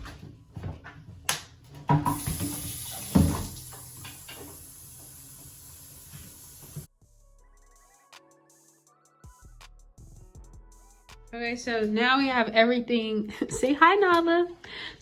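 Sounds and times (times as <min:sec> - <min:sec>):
tap running water: 0:01.9 - 0:06.9.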